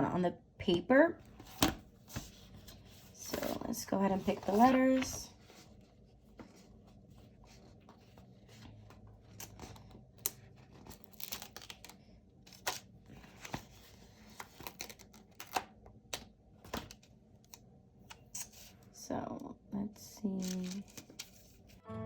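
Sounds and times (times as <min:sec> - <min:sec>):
paper sheets rustling: 0:01.4 - 0:09.7, 0:20.4 - 0:21.8.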